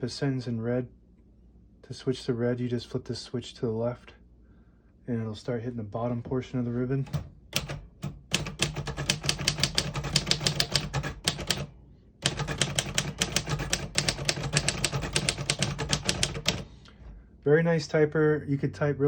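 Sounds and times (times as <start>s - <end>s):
manual typewriter typing: 7.0s - 16.7s.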